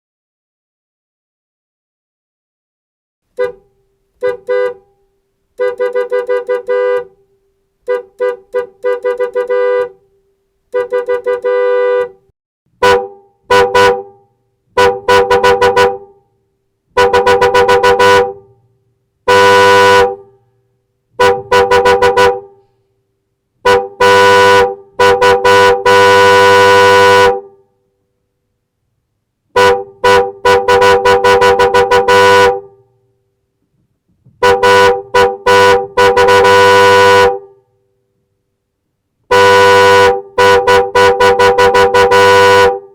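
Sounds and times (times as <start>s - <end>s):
car horn honking: 3.3s - 16.3s, 16.9s - 22.7s, 23.6s - 27.7s, 29.5s - 33.1s, 34.4s - 37.8s, 39.3s - 42.9s.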